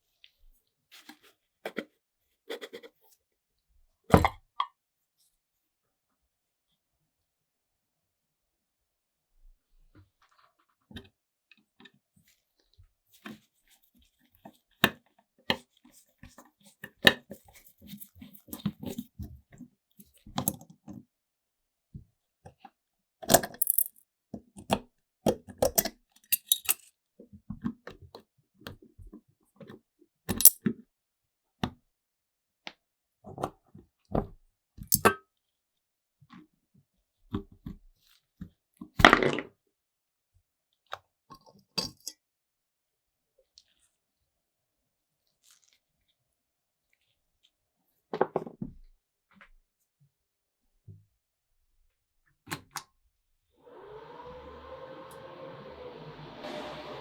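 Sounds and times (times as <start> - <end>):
metal parts and tools clinking: 23.6 - 24.0, 26.4 - 26.8.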